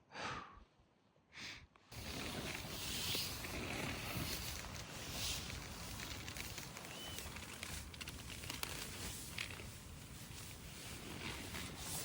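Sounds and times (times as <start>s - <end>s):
breathy exhalations: 0.1s - 0.6s.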